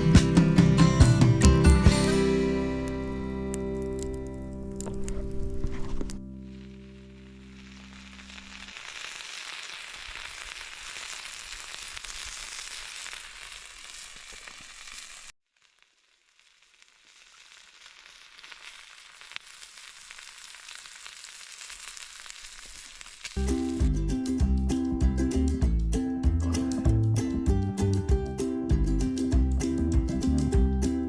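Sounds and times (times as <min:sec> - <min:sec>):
food sizzling in a wok: 0:06.4 - 0:24.0.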